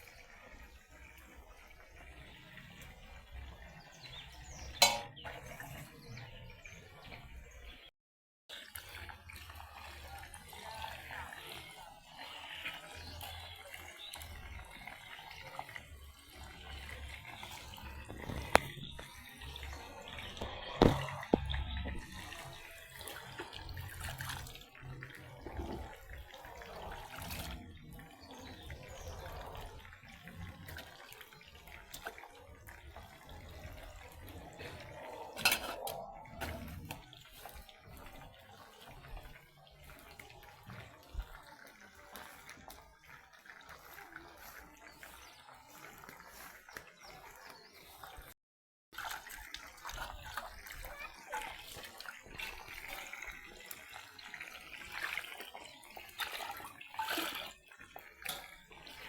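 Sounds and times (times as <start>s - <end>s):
water splashing in sink: 4.5s - 5.8s, 13.0s - 48.3s, 49.0s - 59.0s.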